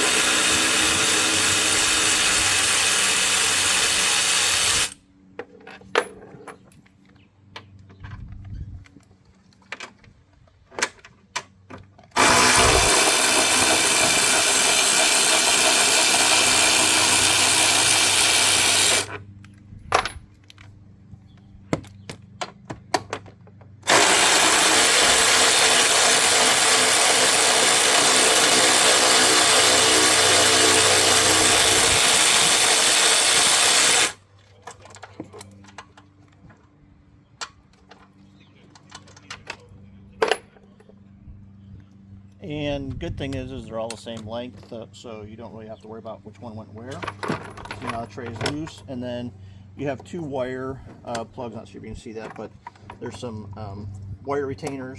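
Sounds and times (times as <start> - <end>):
power tool running: 0.0 - 5.0, 12.2 - 19.3, 23.8 - 34.2.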